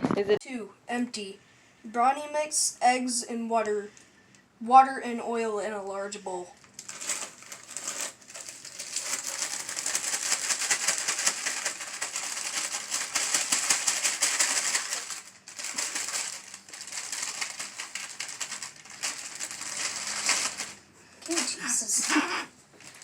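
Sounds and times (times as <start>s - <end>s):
dry mix pouring: 6.6s - 20.9s
bag crinkling and rustling: 6.6s - 23.0s.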